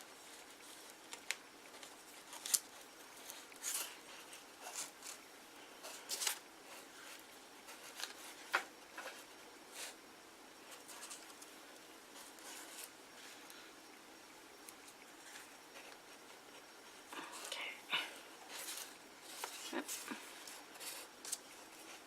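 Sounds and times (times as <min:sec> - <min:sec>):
paper rustling: 0:00.2 - 0:05.2.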